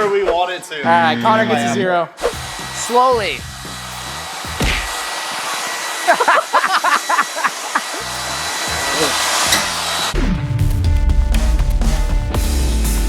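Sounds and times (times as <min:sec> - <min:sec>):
table saw running: 0:02.2 - 0:10.2.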